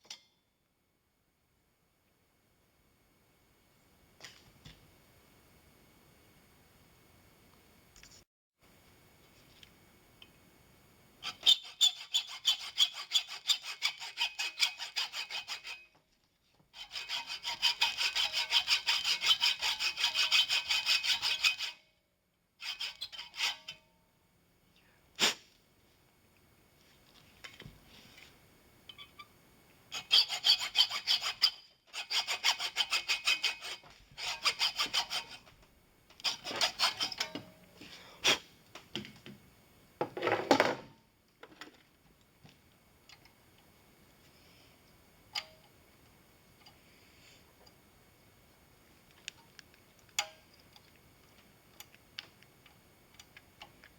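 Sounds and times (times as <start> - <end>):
metal file scraping on brass: 11.2 - 15.9, 16.8 - 21.8, 22.6 - 23.8, 29.9 - 35.5, 36.2 - 37.4.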